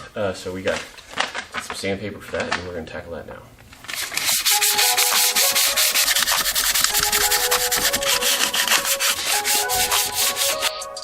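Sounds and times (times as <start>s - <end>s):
sandpaper rubbing on plastic: 3.8s - 10.7s.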